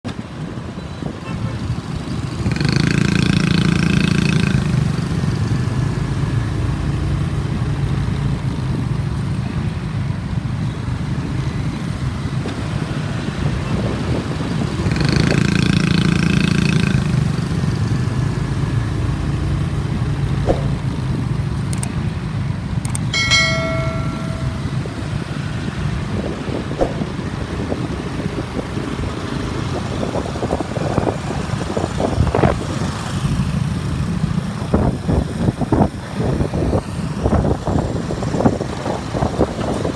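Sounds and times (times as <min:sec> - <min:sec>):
street traffic: 0:00.0 - 0:39.9
motorbike engine: 0:01.8 - 0:09.7, 0:10.9 - 0:35.0.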